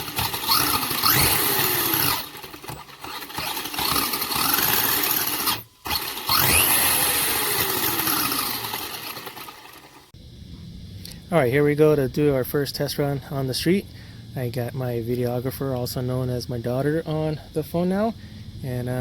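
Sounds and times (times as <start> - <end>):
rc truck electric motor whine: 0.0 - 10.2.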